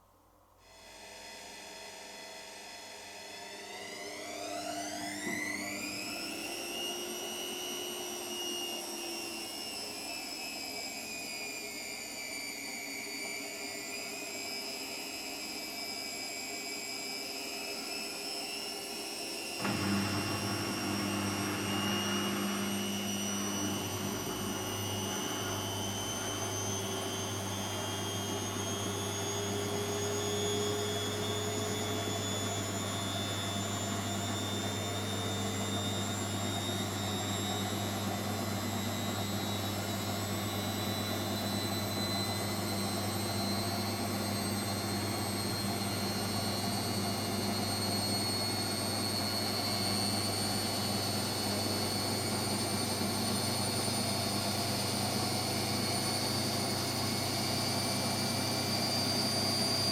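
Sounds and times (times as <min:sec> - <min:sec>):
washing machine motor whine: 0:02.6 - 0:59.9.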